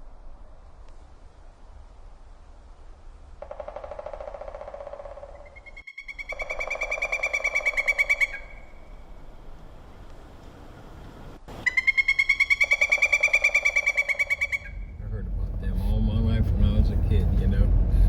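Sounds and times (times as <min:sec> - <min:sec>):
woodpeckers calling: 0:03.4 - 0:14.9.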